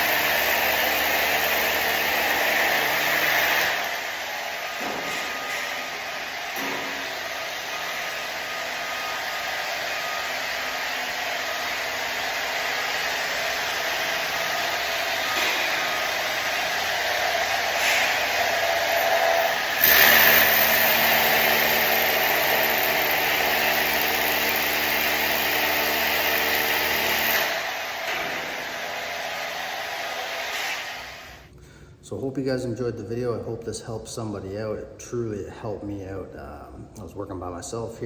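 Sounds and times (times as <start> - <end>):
rotary hammer drilling into concrete: 0.0 - 3.9, 19.6 - 27.7.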